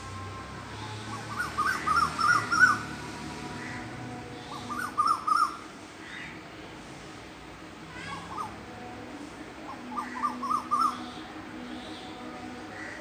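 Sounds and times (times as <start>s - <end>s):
cuckoo calling: 0.9s - 3.0s, 4.5s - 5.6s, 9.7s - 11.1s.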